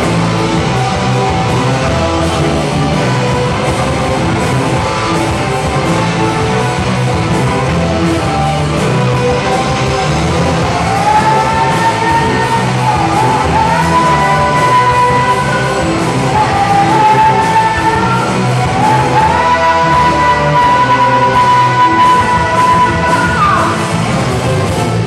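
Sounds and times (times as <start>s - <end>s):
rock band playing: 0.0s - 25.0s
singer holding high notes: 10.7s - 23.9s.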